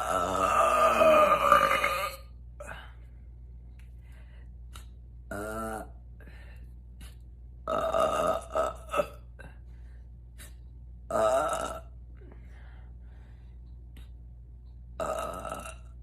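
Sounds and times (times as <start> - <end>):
woman burping loudly: 0.0 - 2.3, 7.7 - 9.2, 11.1 - 11.9, 15.0 - 16.0.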